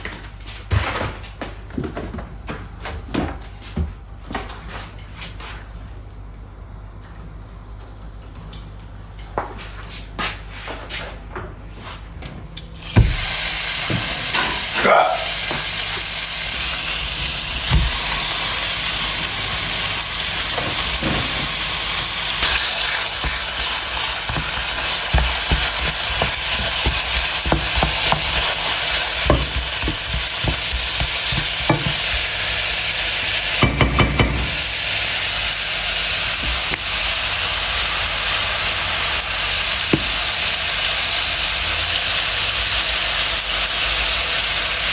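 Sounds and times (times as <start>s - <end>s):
utensil stirring in a pan: 12.8s - 37.2s
food sizzling in a frying pan: 12.8s - 44.9s.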